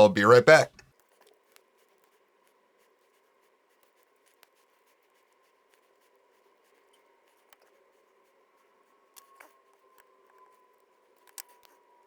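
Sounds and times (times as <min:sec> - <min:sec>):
faint steady hum: 0:00.0 - 0:00.8.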